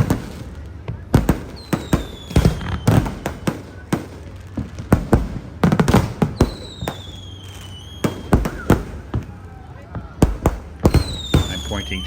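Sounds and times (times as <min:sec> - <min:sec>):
fireworks bangs and crackles: 0:00.0 - 0:12.0
falling firework whistle: 0:01.5 - 0:03.5, 0:06.3 - 0:09.6, 0:10.8 - 0:12.0.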